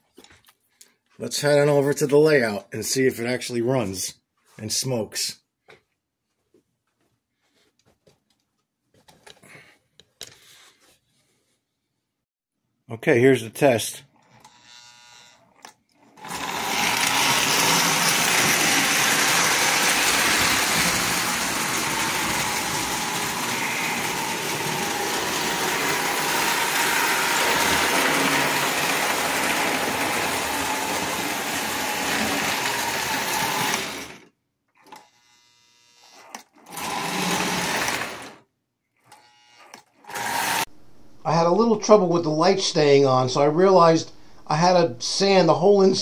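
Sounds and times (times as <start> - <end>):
model train motor whirring: 14.4 - 38.4, 39.0 - 40.7.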